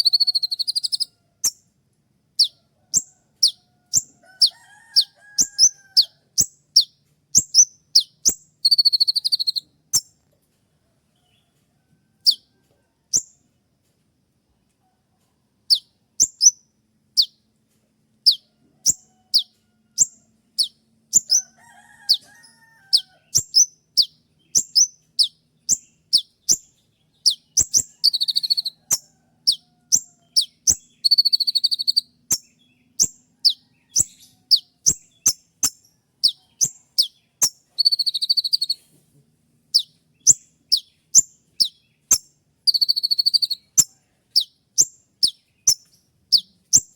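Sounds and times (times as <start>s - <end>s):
bird buzzy trills: 0.0s - 1.6s, 2.4s - 10.2s, 18.2s - 38.8s, 39.7s - 46.9s
bird sharp high calls: 0.0s - 1.6s, 2.4s - 10.1s, 18.2s - 38.9s, 39.7s - 46.9s.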